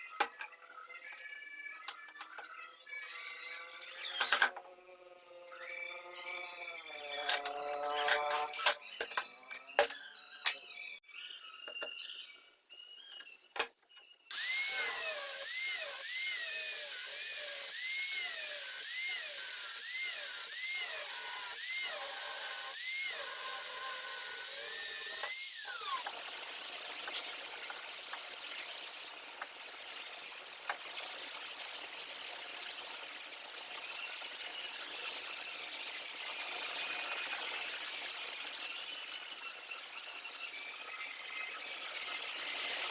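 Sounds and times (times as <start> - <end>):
small power tool motor whining: 3.0 - 12.3, 14.3 - 26.5.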